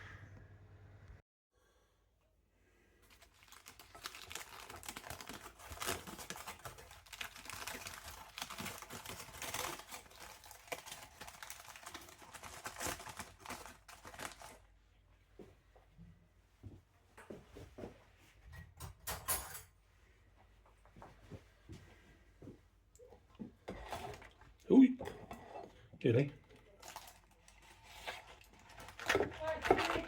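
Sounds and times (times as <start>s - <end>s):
aluminium foil crinkling: 3.0s - 14.7s, 26.2s - 30.0s.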